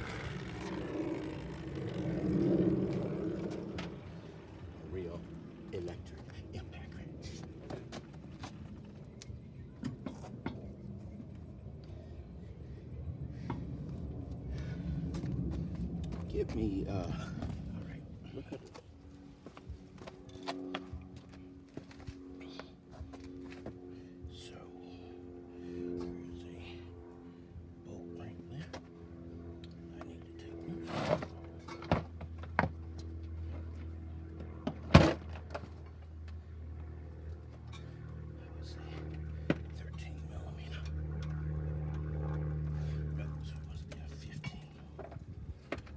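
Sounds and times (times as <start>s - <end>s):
low steady rumble: 0.0s - 45.9s
steady low hum: 0.0s - 45.9s.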